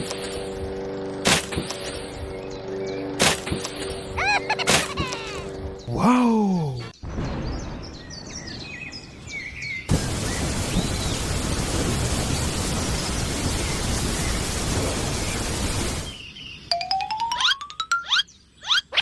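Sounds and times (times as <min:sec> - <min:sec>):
bird-like chirps: 0:00.0 - 0:11.3, 0:15.2 - 0:19.0.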